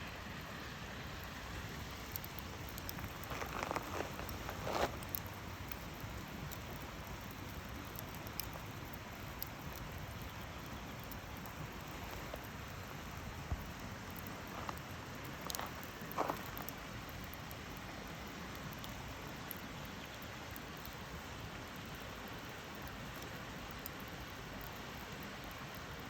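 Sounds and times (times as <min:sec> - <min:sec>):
campfire hissing and crackling: 0:00.0 - 0:26.0
loud fire snaps: 0:01.1 - 0:19.9.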